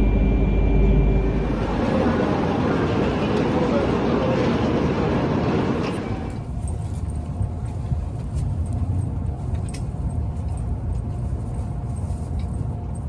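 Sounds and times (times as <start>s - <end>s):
faint steady hum: 0.0s - 6.4s
rushing noise: 0.0s - 6.4s
train rumbling: 0.0s - 13.0s.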